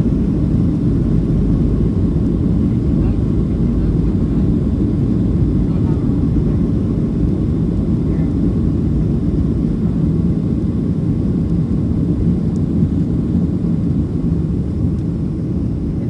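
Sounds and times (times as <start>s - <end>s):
jet engines rumbling in cabin: 0.0s - 16.0s.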